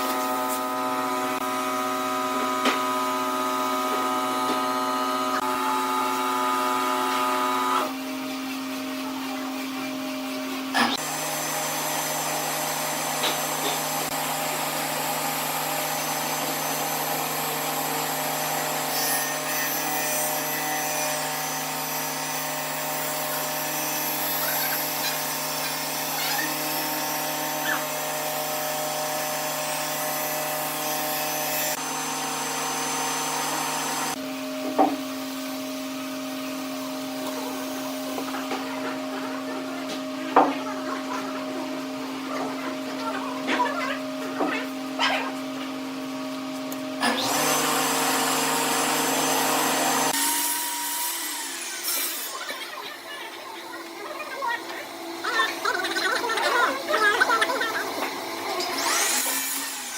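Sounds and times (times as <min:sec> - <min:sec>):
lathe motor whining: 0:53.8 - 0:59.9.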